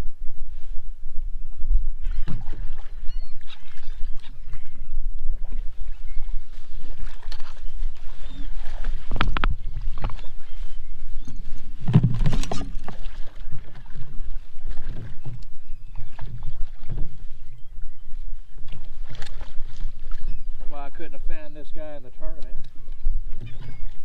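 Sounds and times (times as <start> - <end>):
water splashes: 2.0 - 10.8, 11.7 - 17.7, 18.5 - 22.6
water sloshing against boat hull: 2.0 - 24.0
knocks on boat: 11.8 - 12.9.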